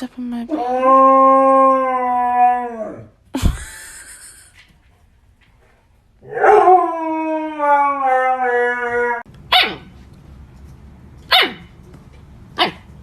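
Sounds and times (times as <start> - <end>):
dog howling: 0.5 - 3.1, 6.2 - 9.3
dog barking: 9.5 - 9.9, 11.3 - 11.7, 12.6 - 12.9.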